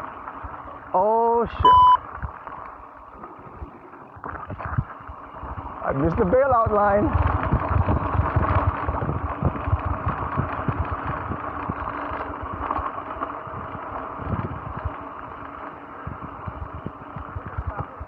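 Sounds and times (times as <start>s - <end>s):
bike rattling over bumps: 0.0s - 18.0s
bike tyres rumbling on dirt: 0.0s - 18.0s
wind rushing on microphone: 5.5s - 11.9s, 13.5s - 14.9s.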